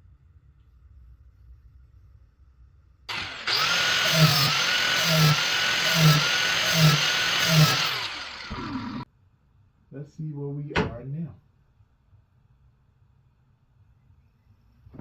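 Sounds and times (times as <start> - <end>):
angle grinder whining: 3.1 - 9.0
grinder switch: 3.1 - 9.0
grinding metal strokes: 3.1 - 9.0.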